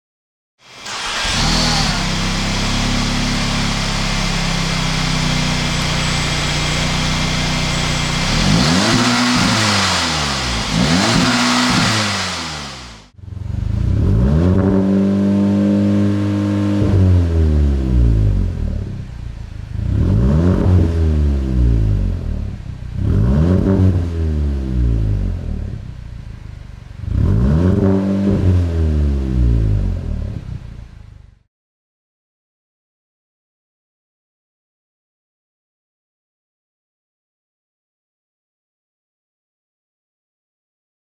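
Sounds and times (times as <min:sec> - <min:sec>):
car engine revving: 0:00.7 - 0:31.4.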